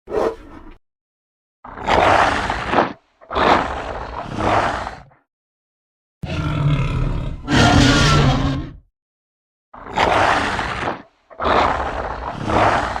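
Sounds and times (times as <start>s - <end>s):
monster roaring: 6.2s - 8.8s, 10.0s - 13.0s.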